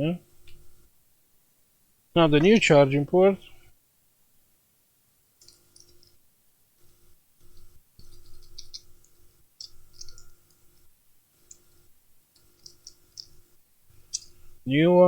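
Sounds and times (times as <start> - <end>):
faint low hum: 0.0 - 15.0
small parts and tools clicking: 5.4 - 6.2, 6.9 - 14.4.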